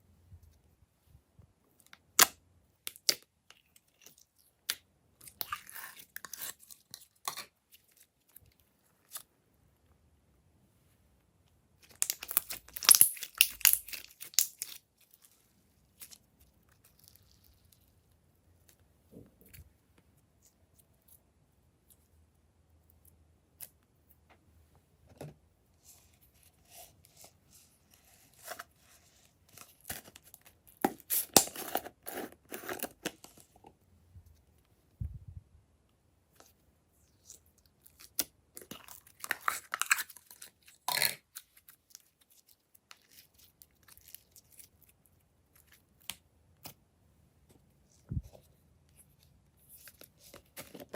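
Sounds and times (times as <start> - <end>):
slime crackling and popping: 11.9 - 14.8.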